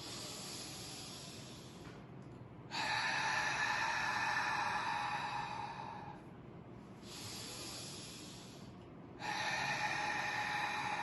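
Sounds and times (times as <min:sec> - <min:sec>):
hissing inhale: 0:00.0 - 0:02.0, 0:07.0 - 0:11.0.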